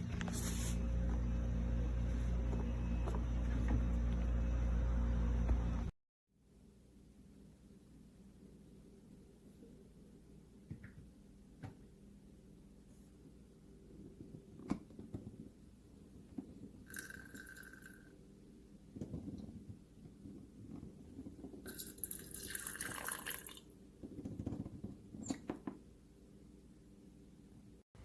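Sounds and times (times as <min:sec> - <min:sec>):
water pouring into a cup: 0:16.9 - 0:18.0, 0:21.7 - 0:23.7.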